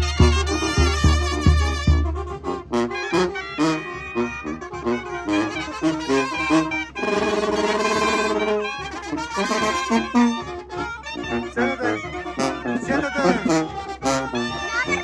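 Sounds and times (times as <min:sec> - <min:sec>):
brass band playing lively tune: 0:00.0 - 0:15.0.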